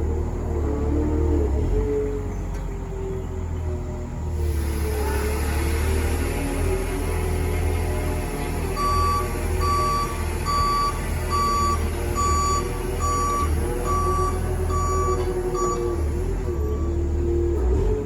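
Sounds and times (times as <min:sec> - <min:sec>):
diesel engine humming: 0:00.0 - 0:18.0
reversing alarm beeping: 0:08.8 - 0:16.1.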